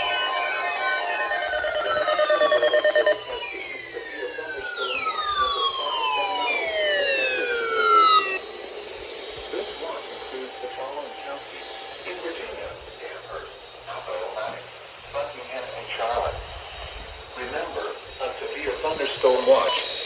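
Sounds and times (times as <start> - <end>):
fast buzzing pulse: 0.0 - 6.3
emergency alert tones: 0.0 - 8.4
downward electronic sweeps: 0.0 - 12.4.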